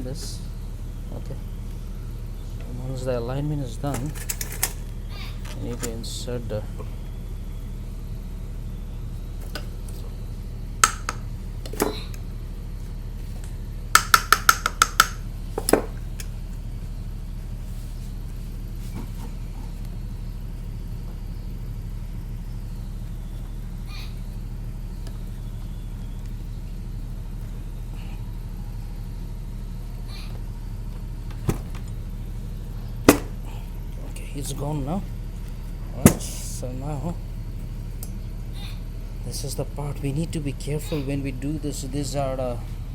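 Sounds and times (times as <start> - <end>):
steady low hum: 0.0 - 42.9
metal parts clinking: 3.9 - 4.8.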